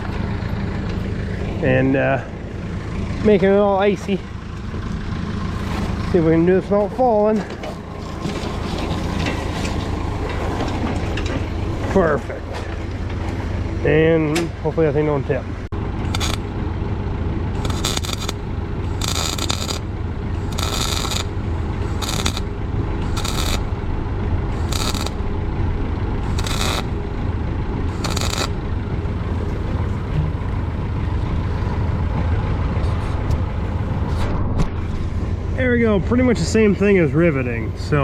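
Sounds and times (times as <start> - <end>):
engine running: 0.0 - 38.0
arc welding crackle: 16.0 - 16.5, 17.6 - 23.8, 24.5 - 25.2, 26.2 - 27.0, 27.9 - 28.6.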